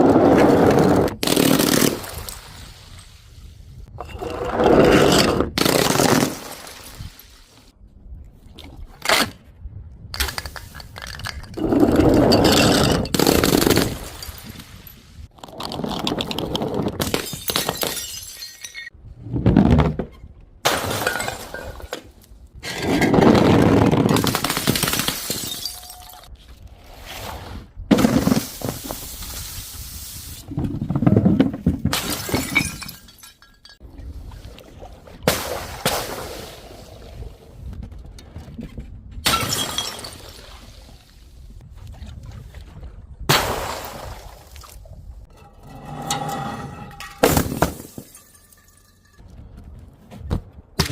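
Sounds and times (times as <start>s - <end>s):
glass bottles shattering: 11.1s - 15.0s, 17.0s - 19.0s, 20.7s - 22.1s, 24.4s - 26.3s, 31.9s - 33.8s, 39.3s - 40.4s, 45.3s - 49.2s.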